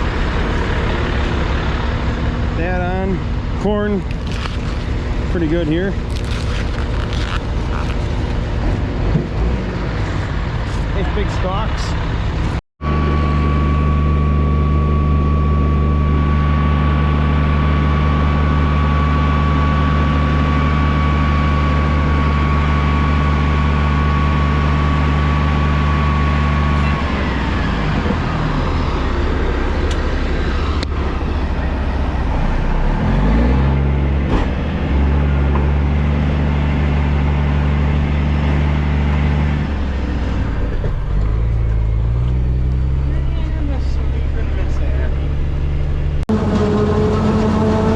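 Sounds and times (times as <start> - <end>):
heavy machinery engine running: 0.0 - 47.9
high whine: 10.9 - 33.0.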